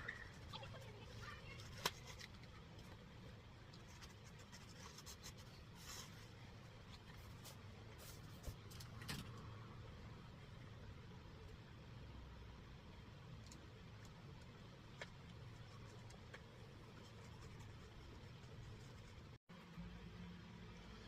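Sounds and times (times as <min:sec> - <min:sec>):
faint scratching and rubbing: 0:03.8 - 0:08.7, 0:15.5 - 0:19.4.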